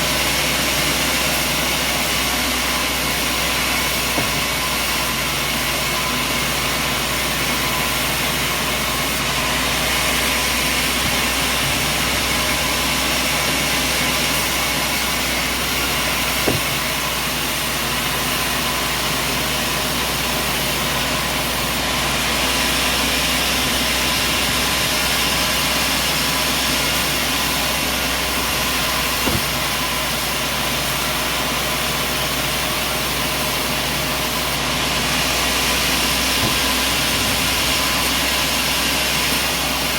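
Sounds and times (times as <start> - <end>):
engine running steadily: 0.0 - 39.9
short knocks: 16.4 - 16.9, 29.1 - 29.8.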